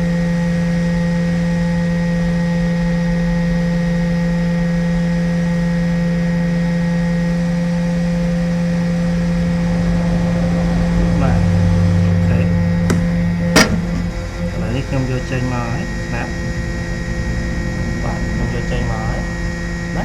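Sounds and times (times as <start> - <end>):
hot air rework station blowing: 12.9 - 16.3.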